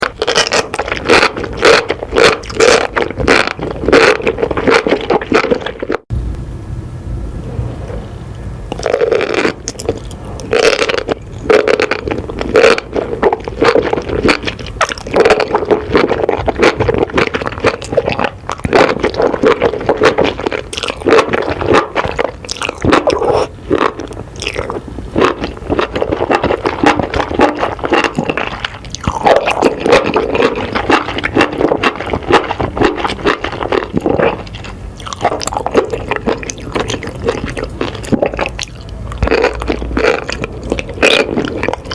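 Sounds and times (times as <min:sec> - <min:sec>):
close-up scraping and crackling: 0:00.0 - 0:06.1, 0:08.7 - 0:41.9.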